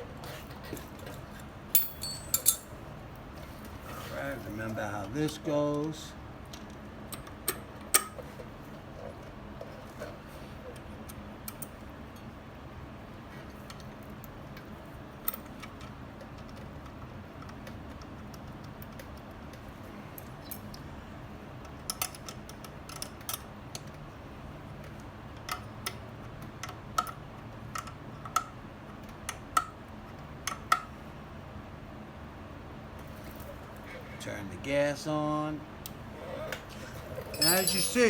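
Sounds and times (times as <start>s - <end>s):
tools clicking on metal parts: 1.0s - 2.7s, 37.2s - 38.0s.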